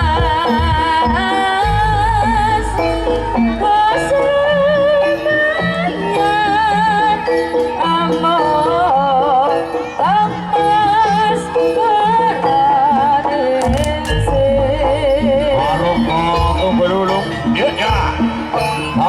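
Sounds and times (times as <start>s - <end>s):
repeating percussion beat: 0.0s - 5.2s, 13.6s - 19.0s
wavering melody line: 0.0s - 7.6s, 13.7s - 19.0s.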